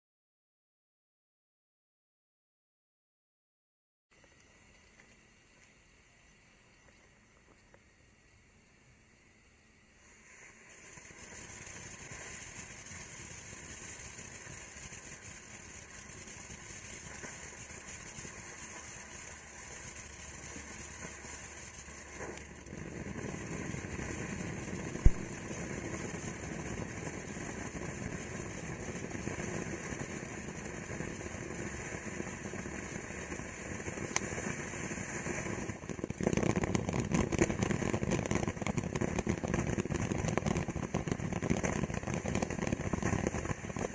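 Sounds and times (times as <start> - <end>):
firework fountain hissing: 4.2 - 43.9
rapid firework crackling: 10.0 - 43.9
firework pop: 10.3 - 43.9.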